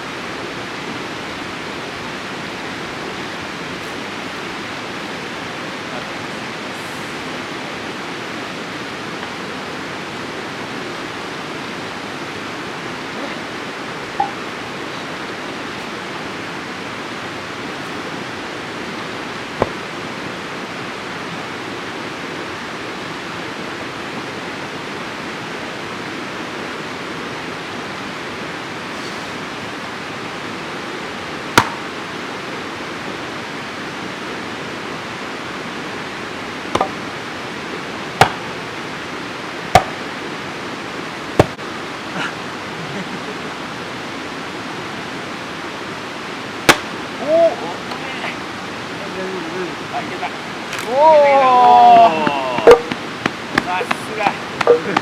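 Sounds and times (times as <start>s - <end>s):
steady rushing noise: 0.0s - 55.0s
sharp knocks or cracks: 31.6s - 31.8s.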